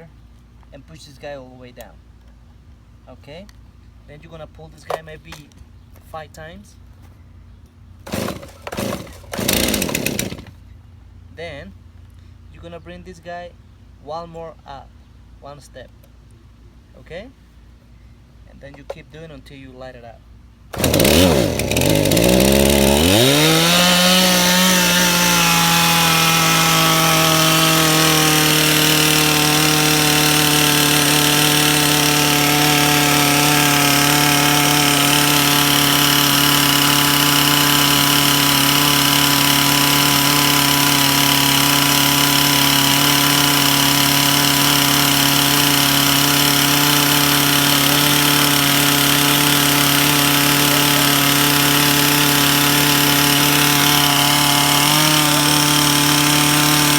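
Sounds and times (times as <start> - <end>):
chainsaw engine running: 8.0 - 10.6, 20.7 - 56.9.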